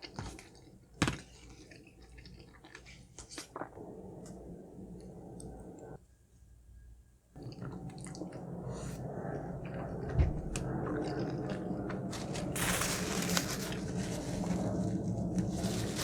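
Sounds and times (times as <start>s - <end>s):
chewing crunchy food: 0.0s - 3.9s, 10.6s - 13.9s.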